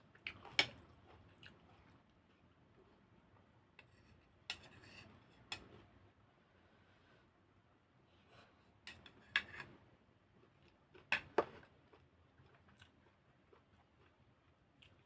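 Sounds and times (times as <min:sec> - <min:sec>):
crunchy eating: 0:10.4 - 0:15.0.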